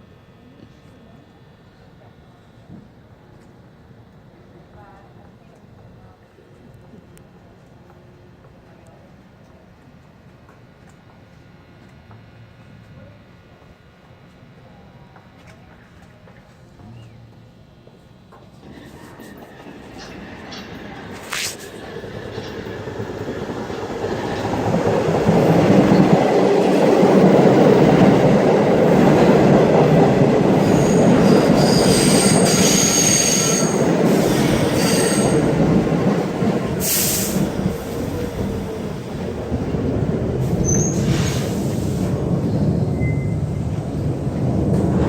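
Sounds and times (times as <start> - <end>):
subway train rumble: 0.0 - 45.0
brief hisses: 21.2 - 21.9, 36.8 - 37.5, 40.5 - 42.2
steel wheel squeal: 30.6 - 35.5, 40.6 - 41.6.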